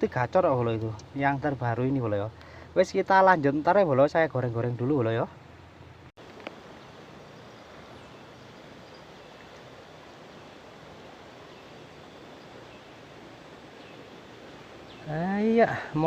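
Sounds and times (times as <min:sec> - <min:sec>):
fast-flowing river rushing: 0:06.6 - 0:16.0.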